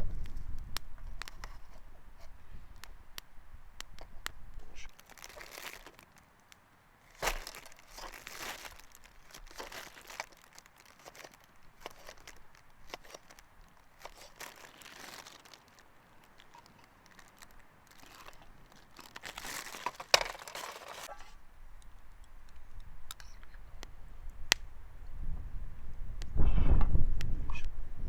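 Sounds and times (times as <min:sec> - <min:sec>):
material rustling and crinkling: 0:04.8 - 0:06.3, 0:07.0 - 0:21.4.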